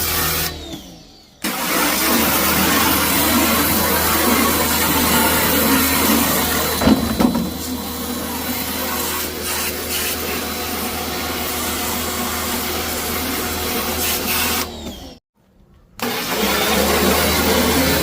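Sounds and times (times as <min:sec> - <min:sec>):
pressure washer motor droning: 0:00.0 - 0:15.2, 0:16.0 - 0:18.0
short knocks: 0:06.8 - 0:07.7.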